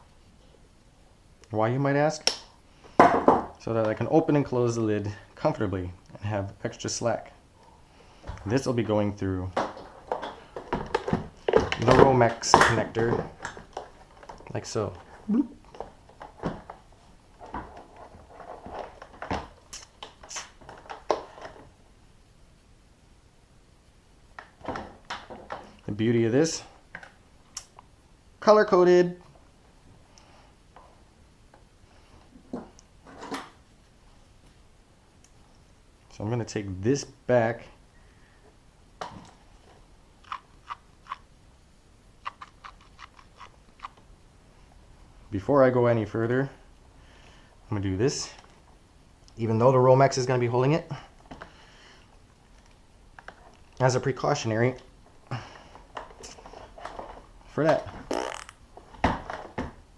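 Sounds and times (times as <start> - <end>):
hands handling cables: 51.2 - 59.8.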